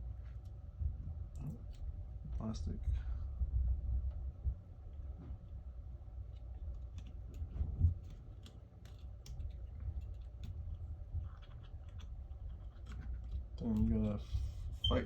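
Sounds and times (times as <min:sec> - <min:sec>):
low steady rumble: 0:00.0 - 0:15.0.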